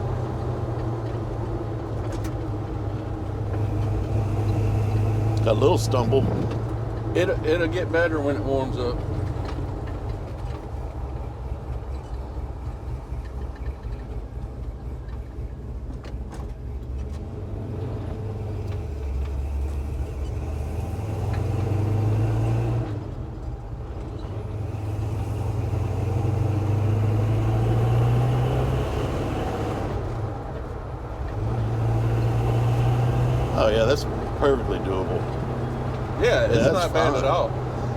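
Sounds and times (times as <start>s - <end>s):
truck engine accelerating: 0.0s - 37.9s.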